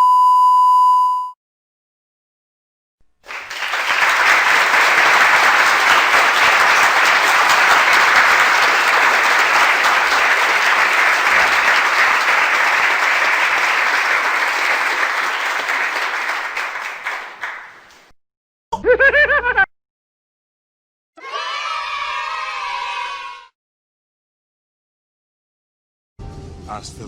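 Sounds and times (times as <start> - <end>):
crowd applause: 3.2 - 18.1.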